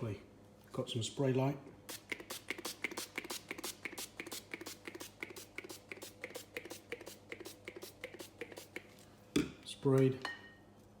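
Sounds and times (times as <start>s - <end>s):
oil spray hissing: 1.9s - 8.9s.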